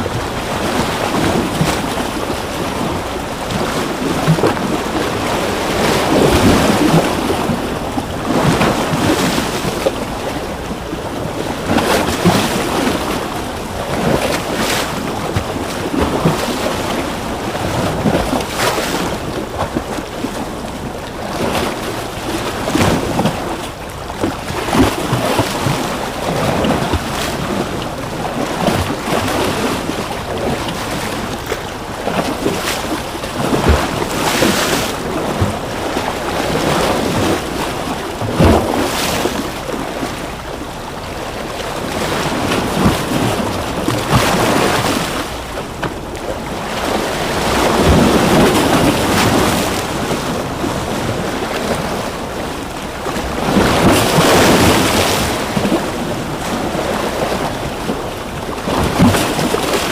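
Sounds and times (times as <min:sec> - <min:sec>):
ocean waves breaking: 0:00.0 - 0:59.9.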